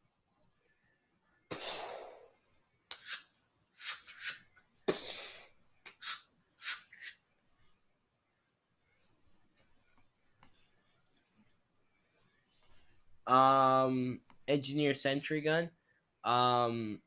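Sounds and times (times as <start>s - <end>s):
short sharp mouth puffs: 1.5s - 2.3s, 2.9s - 7.2s.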